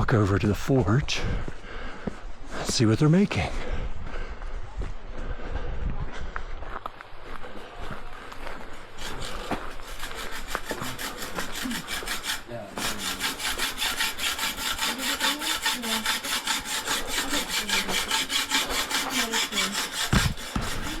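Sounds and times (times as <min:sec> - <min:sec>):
fast scraping of metal: 0:09.0 - 0:21.0
heavy thump: 0:20.1 - 0:21.0.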